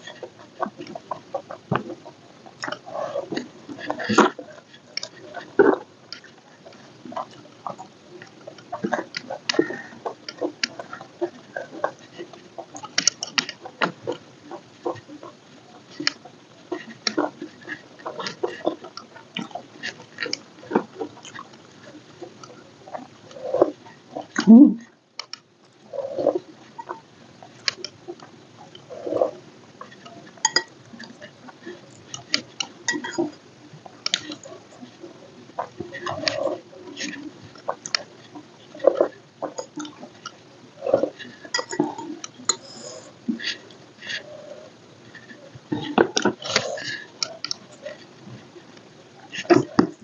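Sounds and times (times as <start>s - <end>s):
chewing and mouth clicks: 25.2s - 42.6s.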